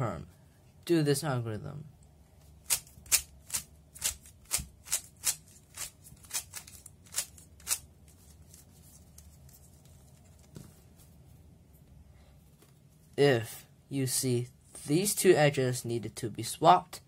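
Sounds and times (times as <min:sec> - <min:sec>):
plastic puzzle cube clicking: 0:02.7 - 0:07.8.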